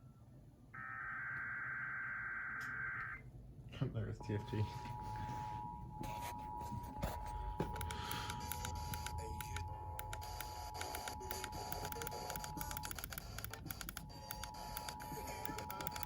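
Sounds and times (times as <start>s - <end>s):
radio clicks and crackle: 7.1s - 16.0s.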